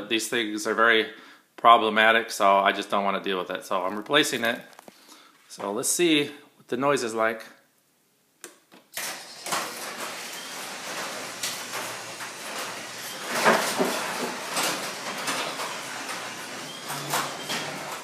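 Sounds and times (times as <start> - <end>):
garage door opener running: 9.0 - 18.0.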